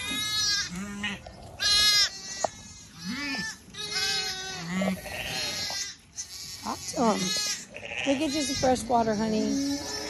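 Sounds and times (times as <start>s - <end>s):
ewes bleating: 0.0s - 10.0s
lambs bleating: 0.0s - 10.0s.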